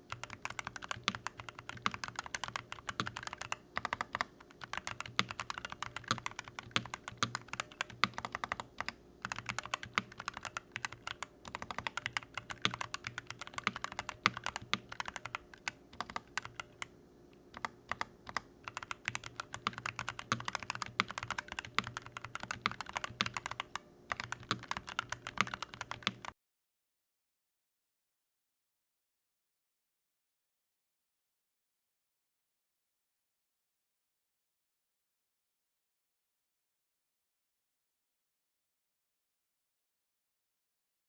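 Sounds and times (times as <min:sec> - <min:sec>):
mechanical keyboard typing: 0:00.0 - 0:16.9, 0:17.5 - 0:26.4.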